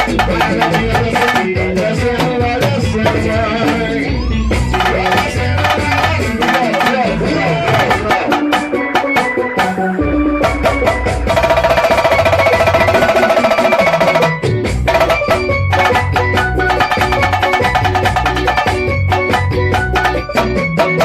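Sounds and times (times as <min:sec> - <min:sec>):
bass line: 0:00.0 - 0:21.0
drums and percussion: 0:00.0 - 0:21.0
fast repeated note figure: 0:03.7 - 0:09.3, 0:11.0 - 0:21.0.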